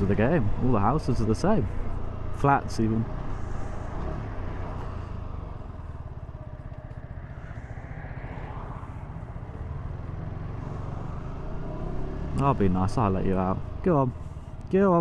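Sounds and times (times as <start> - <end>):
motorcycle engine running: 0.0 - 7.7.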